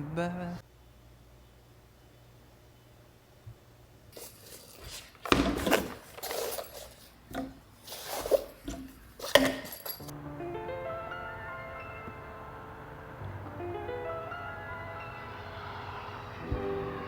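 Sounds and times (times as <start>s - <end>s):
objects rubbing and scraping: 4.2s - 10.1s.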